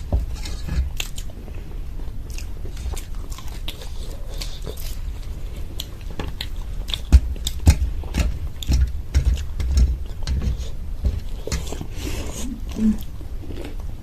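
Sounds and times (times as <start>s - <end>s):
chewing and crunching: 0.0s - 14.0s.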